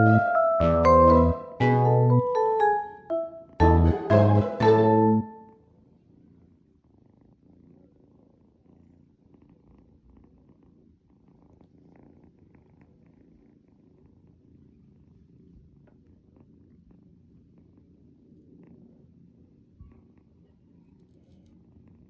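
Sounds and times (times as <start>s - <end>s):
kitten purring: 5.9s - 22.0s.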